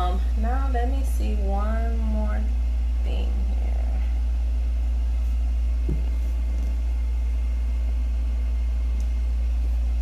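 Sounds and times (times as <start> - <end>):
soft knock: 5.8 - 6.2.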